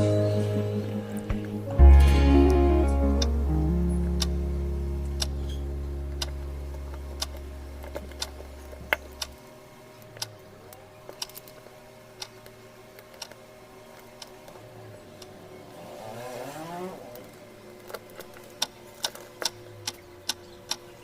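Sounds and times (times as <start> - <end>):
held guitar chord: 0.0 - 9.2
regular ticking: 0.0 - 9.4, 18.2 - 21.0.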